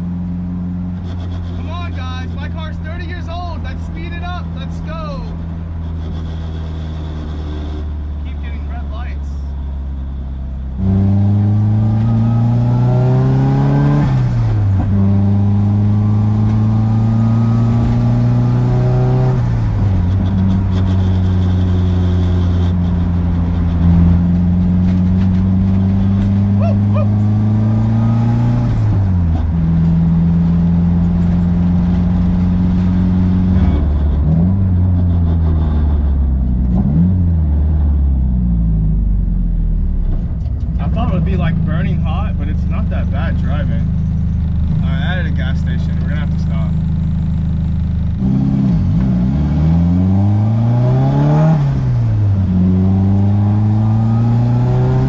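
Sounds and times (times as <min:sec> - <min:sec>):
car engine accelerating through gears: 0:10.7 - 0:41.9, 0:42.6 - 0:55.0.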